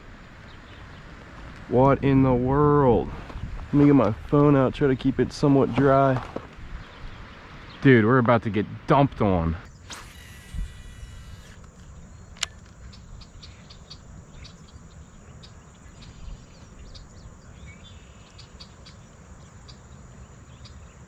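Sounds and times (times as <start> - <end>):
high insect drone: 9.7 - 21.0
sharp click: 9.8 - 12.8.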